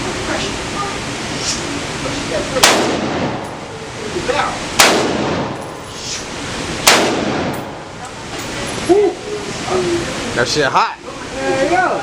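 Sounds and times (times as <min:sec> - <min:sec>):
gunshots with ringing echo: 0:02.6 - 0:03.5, 0:04.8 - 0:05.7, 0:06.8 - 0:07.8.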